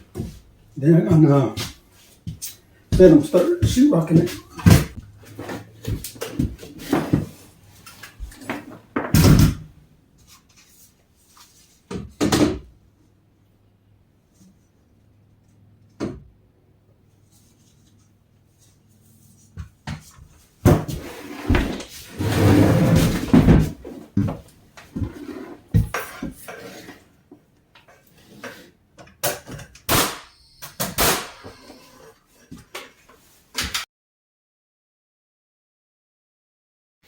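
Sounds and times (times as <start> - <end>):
clattering and handling noise: 0.0 - 12.7, 17.2 - 30.0, 30.6 - 33.8.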